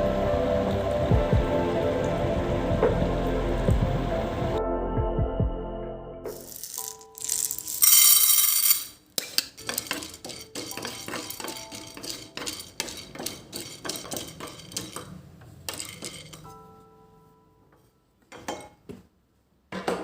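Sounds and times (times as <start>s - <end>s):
soft background music: 0.0s - 7.8s, 9.6s - 14.4s, 15.6s - 18.2s
dishes and utensils clinking: 6.4s - 16.7s, 18.3s - 18.9s.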